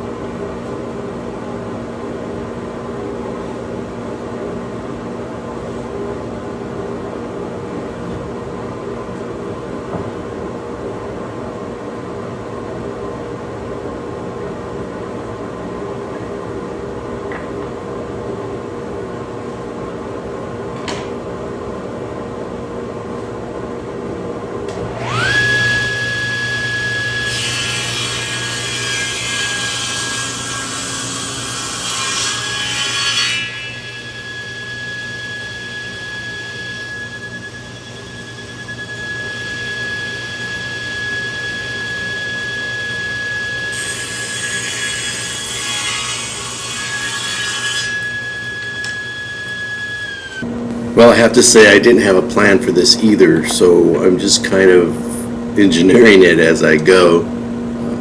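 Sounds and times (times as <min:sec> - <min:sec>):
steady background hum: 0:00.0 - 0:58.0
table saw whining: 0:24.6 - 0:58.0
saw cutting wood: 0:24.8 - 0:42.1, 0:43.1 - 0:57.3.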